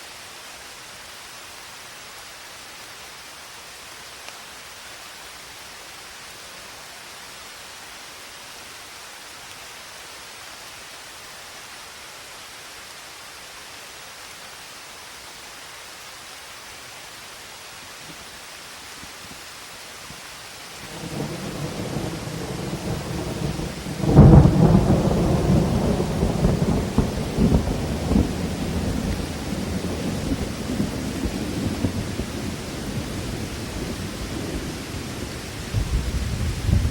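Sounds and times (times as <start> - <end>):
rain hissing: 0.0 - 36.9
thunder clap: 20.8 - 36.9
thunder rumbling: 20.8 - 36.9.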